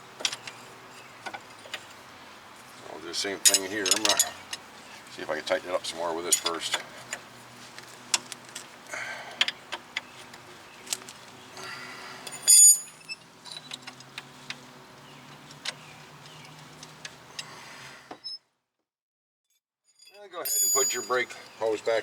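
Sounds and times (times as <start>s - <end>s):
hand tools clinking on metal: 2.9s - 7.2s, 12.2s - 14.1s, 20.0s - 22.0s.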